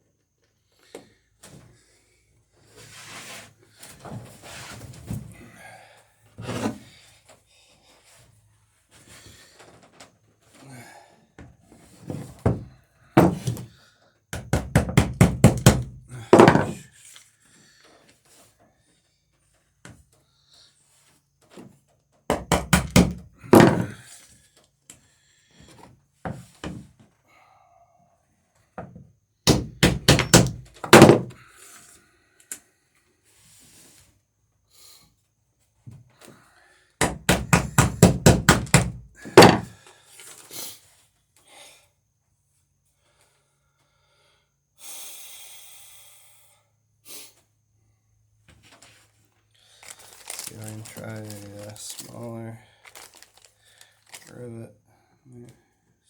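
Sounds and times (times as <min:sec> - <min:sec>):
hammer striking rivets: 0:13.2 - 0:13.6, 0:14.4 - 0:16.8, 0:22.3 - 0:24.0, 0:29.5 - 0:31.4, 0:37.0 - 0:39.7.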